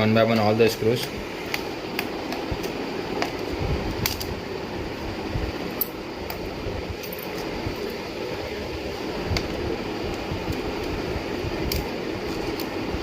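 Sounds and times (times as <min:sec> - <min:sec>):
steady background hum: 0:00.0 - 0:13.0.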